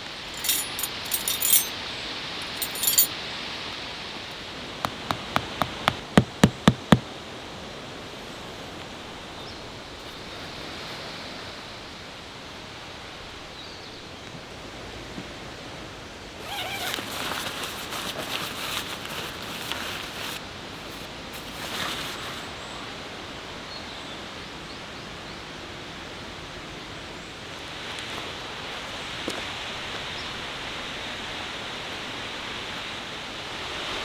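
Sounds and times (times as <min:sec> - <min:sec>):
rustling: 0:00.3 - 0:01.7, 0:02.4 - 0:03.1.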